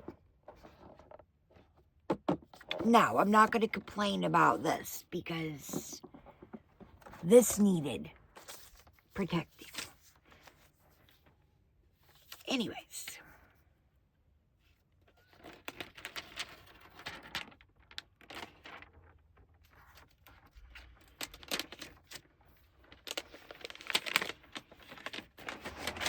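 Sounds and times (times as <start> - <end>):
packaging crinkling and rustling: 15.4 - 26.0
wrapping tearing: 22.9 - 26.0.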